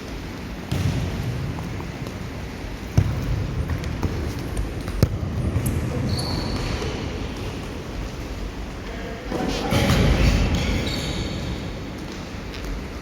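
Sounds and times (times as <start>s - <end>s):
ball kicked thuds: 0.7s - 1.6s
high squeak: 6.1s - 6.8s, 10.7s - 11.6s.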